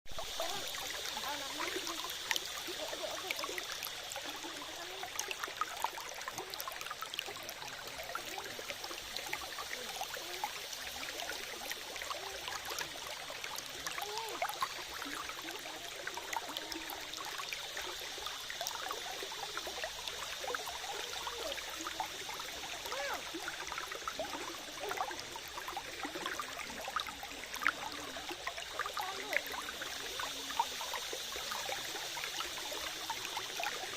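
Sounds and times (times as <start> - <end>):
stream trickling and bubbling: 0.1 - 33.9.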